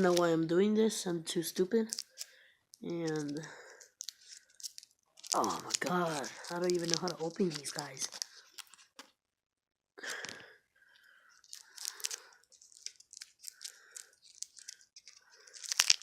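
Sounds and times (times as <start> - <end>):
wrappers crinkling and tearing: 0.0 - 0.3, 1.8 - 9.1, 11.3 - 16.0.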